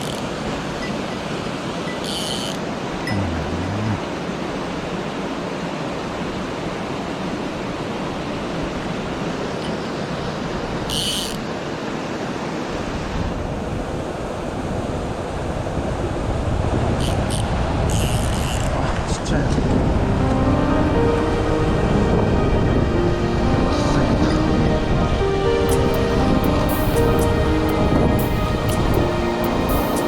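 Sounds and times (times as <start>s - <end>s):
stream rushing over rocks: 0.0s - 15.8s
brief high-pitched sound: 3.1s - 4.0s.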